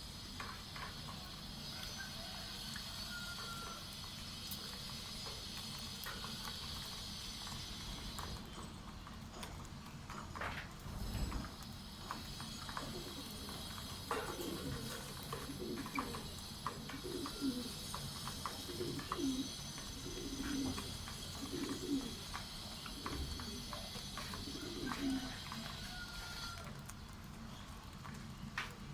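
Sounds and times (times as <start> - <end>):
low cooing bird calls: 12.3 - 27.8.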